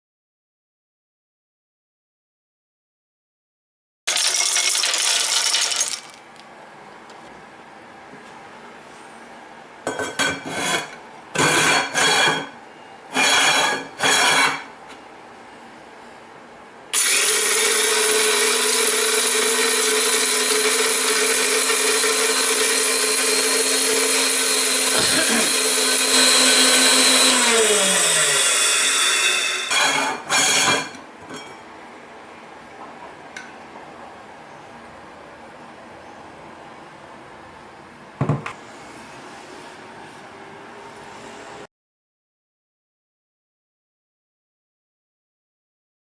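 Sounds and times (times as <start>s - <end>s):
clatter bursts: 4.1s - 6.2s
tabletop grinder whining: 10.5s - 12.4s, 13.1s - 14.6s, 16.9s - 31.0s.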